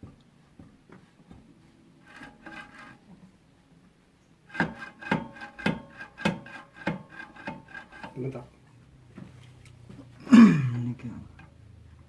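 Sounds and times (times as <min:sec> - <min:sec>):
soft scraping with faint ring: 0:01.6 - 0:03.8, 0:04.5 - 0:08.6
rhythmic metallic knocking: 0:02.0 - 0:03.0, 0:04.5 - 0:08.5.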